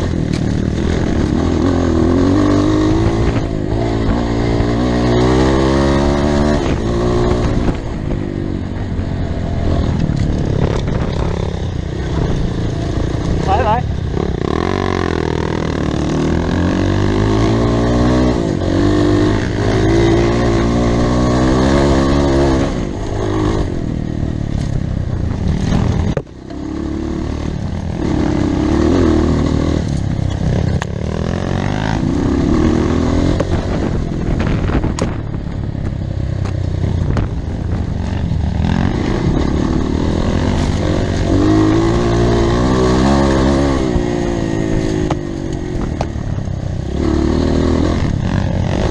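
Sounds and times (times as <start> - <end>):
motorcycle engine revving: 0.0 - 48.9.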